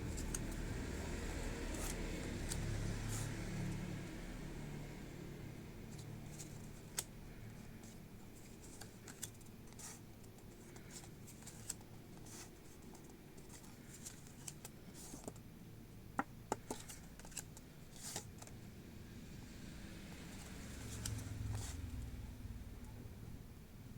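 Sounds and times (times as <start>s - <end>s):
cards and packaging rustling: 0.0s - 3.8s, 5.8s - 15.5s, 16.5s - 18.6s, 20.2s - 22.0s.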